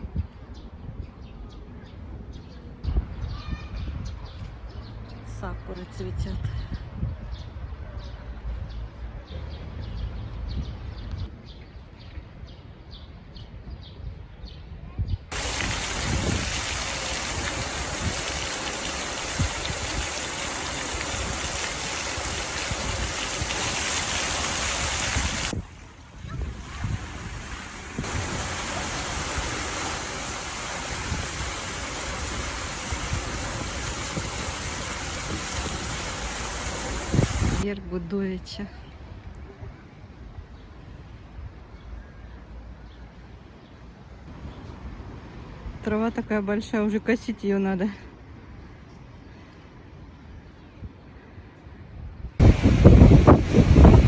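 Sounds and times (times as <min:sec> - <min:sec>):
wind buffeting microphone: 0:13.6 - 0:37.7, 0:52.1 - 0:54.0
stormy sea surf roaring: 0:26.4 - 0:37.6, 0:52.4 - 0:54.0.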